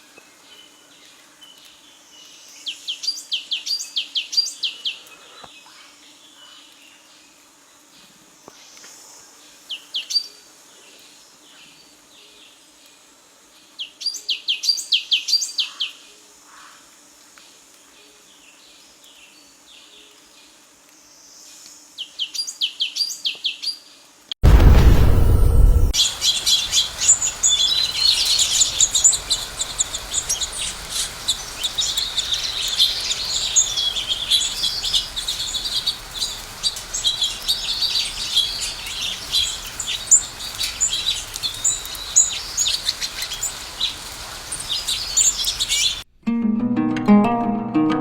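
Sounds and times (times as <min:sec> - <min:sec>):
loud rush of noise: 0:24.4 - 0:43.1
bird singing fast trills: 0:26.0 - 0:46.0.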